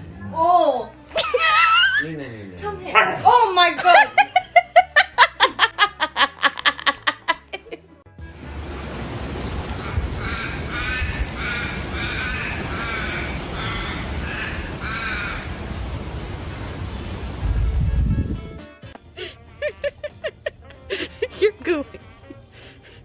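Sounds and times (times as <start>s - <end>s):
low rumble of wind: 8.3s - 18.6s.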